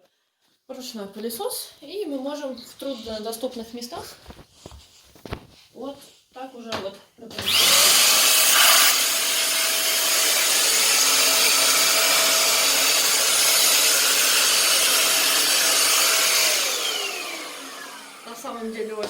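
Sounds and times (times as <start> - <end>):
vacuum cleaner running: 7.3 - 19.0
vacuum motor winding down: 7.4 - 18.4.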